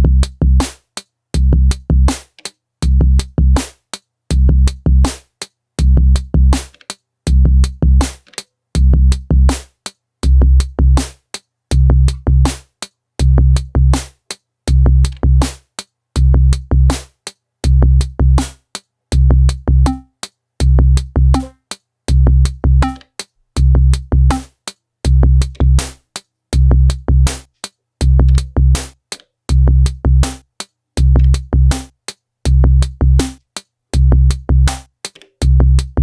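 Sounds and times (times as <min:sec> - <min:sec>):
electronic drum pattern: 0:11.7 - 0:12.6, 0:19.2 - 0:26.0, 0:26.6 - 0:33.4, 0:34.0 - 0:36.0.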